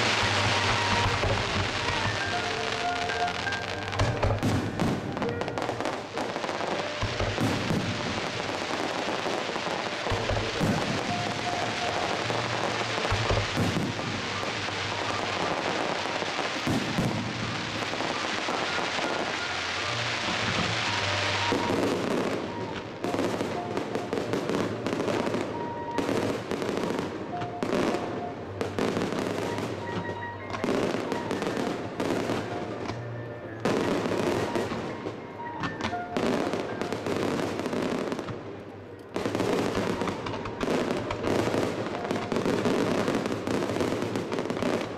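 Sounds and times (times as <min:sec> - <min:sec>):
fireworks crackling and banging: 0:00.0 - 0:44.9.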